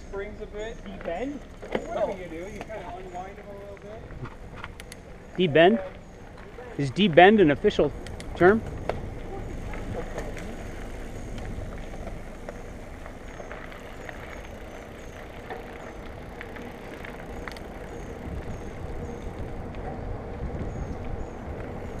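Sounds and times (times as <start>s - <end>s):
wind rumble: 2.2s - 22.0s
sharp clicks: 4.6s - 5.1s, 7.9s - 9.0s.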